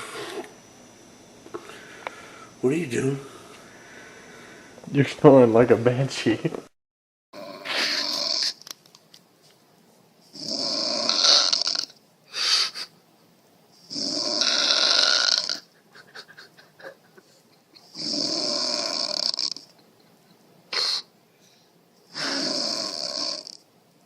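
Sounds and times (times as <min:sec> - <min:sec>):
person snoring loudly: 0:07.4 - 0:08.6, 0:10.3 - 0:12.0, 0:13.8 - 0:15.7, 0:17.8 - 0:19.7, 0:22.1 - 0:23.6.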